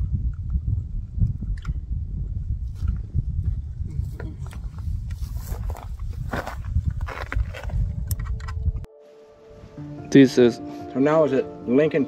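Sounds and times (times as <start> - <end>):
wind buffeting microphone: 0.0 - 8.9.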